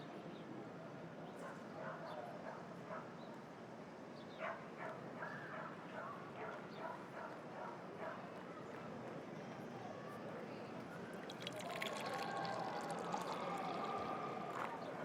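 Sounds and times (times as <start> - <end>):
steady traffic hum: 11.1 - 15.0.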